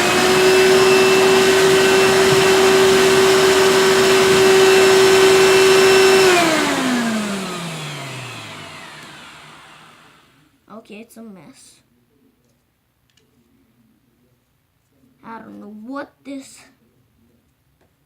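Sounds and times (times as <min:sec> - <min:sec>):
vacuum cleaner motor whining: 0:00.0 - 0:10.4
vacuum cleaner winding down: 0:00.0 - 0:10.4.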